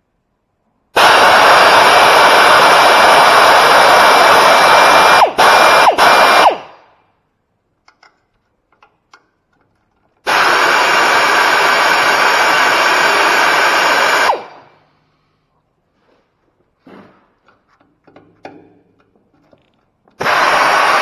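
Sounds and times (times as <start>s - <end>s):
handheld power tool whining: 1.0s - 6.8s, 10.2s - 14.7s, 20.1s - 21.0s.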